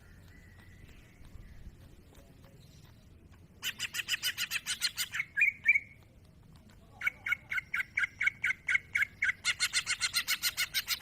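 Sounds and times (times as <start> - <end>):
bird singing fast notes: 3.6 - 6.0, 7.0 - 11.0.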